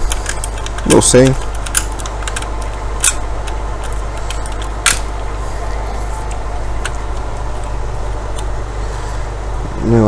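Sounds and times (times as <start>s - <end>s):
plastic and metal parts clicking: 0.0s - 5.2s, 6.3s - 8.5s
steady low hum: 0.0s - 10.0s.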